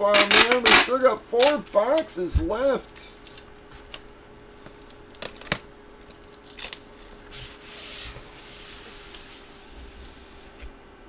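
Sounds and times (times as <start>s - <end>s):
packaging rubbing and sliding: 3.2s - 10.6s.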